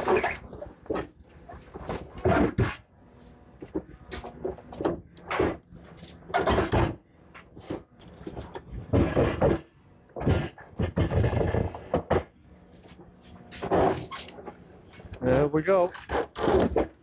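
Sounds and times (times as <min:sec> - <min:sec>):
demolition machine crunching: 0:00.0 - 0:02.8, 0:06.2 - 0:12.4.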